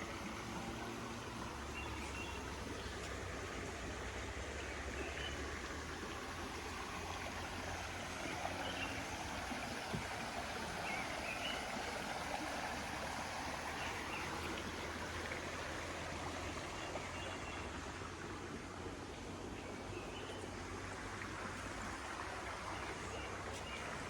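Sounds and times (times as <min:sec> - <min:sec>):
stream water rushing: 0:00.0 - 0:24.0.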